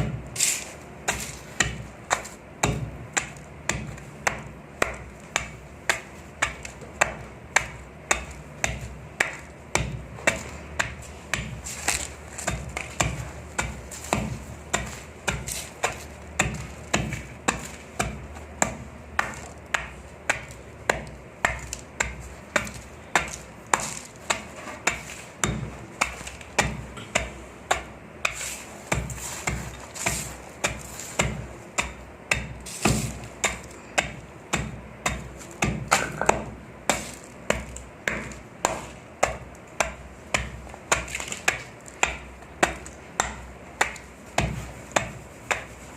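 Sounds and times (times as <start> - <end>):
dry sand crunching: 0.0 - 33.8.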